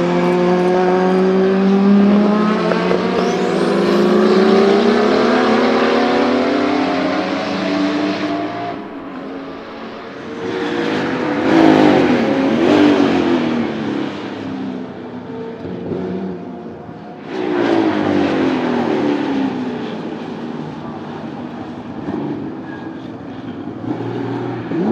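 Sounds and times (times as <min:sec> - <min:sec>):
race car accelerating past: 0:00.1 - 0:14.4.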